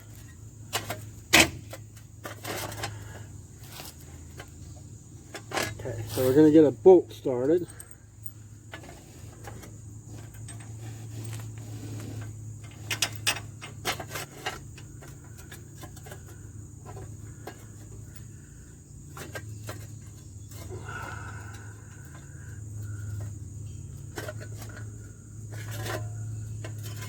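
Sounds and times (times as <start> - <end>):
high insect buzz: 14.8 - 27.0.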